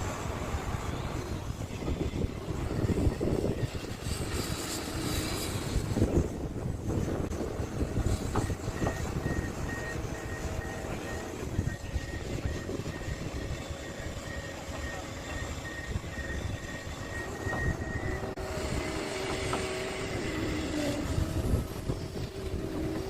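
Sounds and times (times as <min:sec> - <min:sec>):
excavator engine rumble: 0:00.0 - 0:23.0
steady whine: 0:00.0 - 0:23.0
high pulsing beep: 0:08.3 - 0:18.4.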